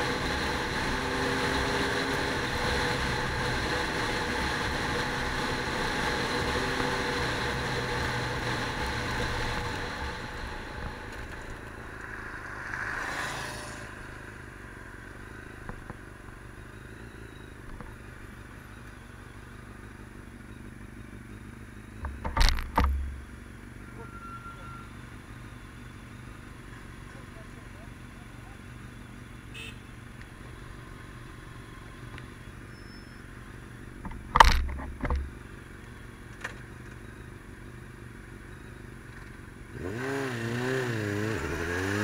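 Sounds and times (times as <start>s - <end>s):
vehicle engine running: 0.0s - 40.0s
rushing swell: 11.6s - 14.8s.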